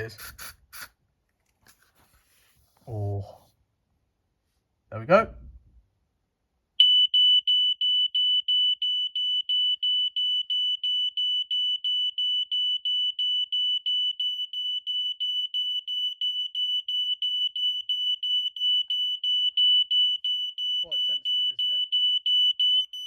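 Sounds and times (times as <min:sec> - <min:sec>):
aerosol spray hissing: 0:00.0 - 0:01.0
smoke alarm beeping rapidly: 0:06.8 - 0:23.0.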